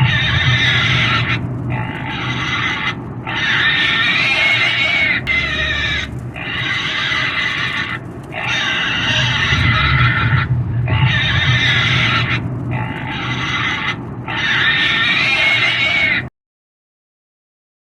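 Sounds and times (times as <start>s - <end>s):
pig squealing: 0.0s - 16.3s.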